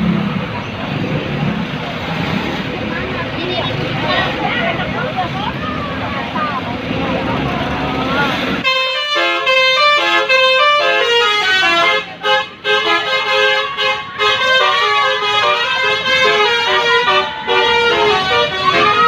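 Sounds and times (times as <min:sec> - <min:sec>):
bus air horn playing melody: 0:08.6 - 0:19.0.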